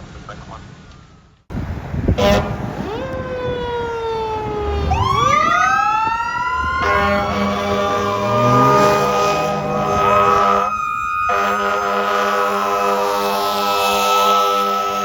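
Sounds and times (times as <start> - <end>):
air horn blast: 2.1 - 3.0, 6.8 - 15.0
fire engine siren winding: 2.2 - 15.0.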